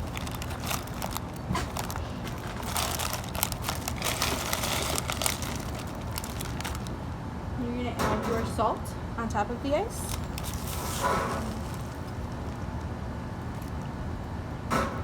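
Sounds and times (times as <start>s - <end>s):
ice cubes clattering in plastic bag: 0.0s - 7.0s, 9.9s - 12.6s
plastic bag crinkling: 0.0s - 7.0s, 9.9s - 12.8s.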